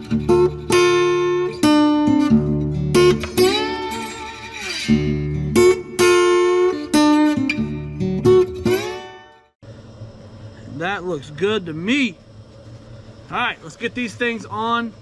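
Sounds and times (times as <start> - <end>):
guitar music with bass: 0.0 - 9.6.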